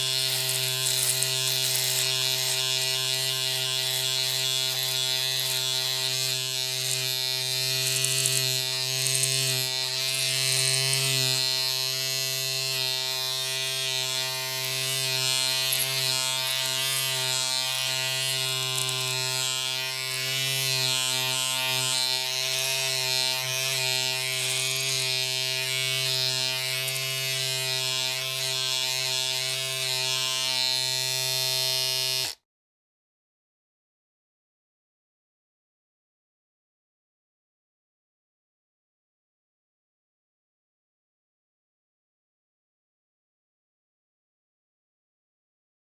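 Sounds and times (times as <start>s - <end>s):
electric shaver buzzing: 0.0s - 32.4s.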